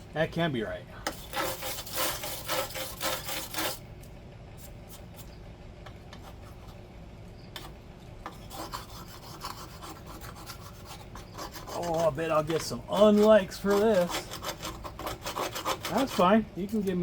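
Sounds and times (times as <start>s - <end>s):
hand tool scraping grime: 1.0s - 3.8s, 7.6s - 17.0s.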